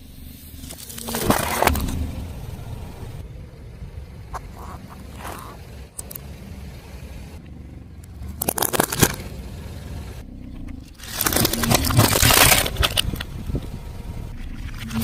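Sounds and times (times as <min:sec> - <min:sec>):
car engine running low: 0:00.0 - 0:15.0
tyre crushing brittle objects: 0:08.3 - 0:09.3, 0:11.0 - 0:13.3.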